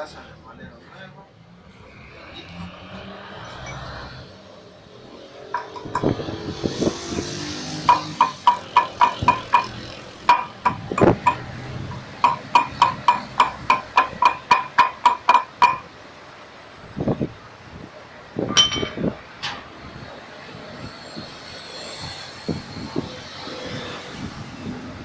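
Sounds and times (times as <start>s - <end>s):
hammer striking metal: 5.6s - 6.4s, 7.9s - 15.9s, 18.5s - 19.6s
dull knocks: 7.9s - 15.9s
high metallic pings: 7.9s - 15.9s.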